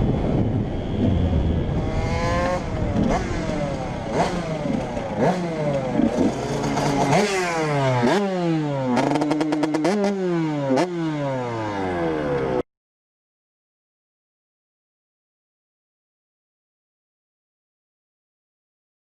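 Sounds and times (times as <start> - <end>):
two-stroke engine revving: 1.7 - 12.6.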